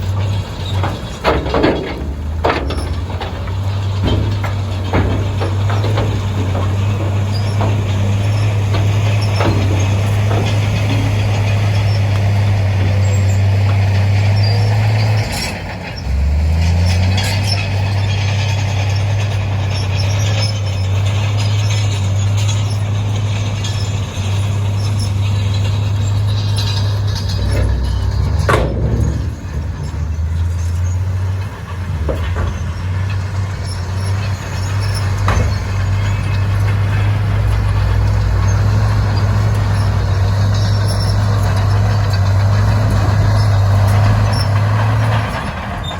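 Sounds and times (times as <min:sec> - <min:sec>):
heavy diesel engine running: 0:00.0 - 0:45.9
loud metal clank: 0:00.0 - 0:45.9
knocks: 0:00.3 - 0:15.2, 0:25.6 - 0:31.2.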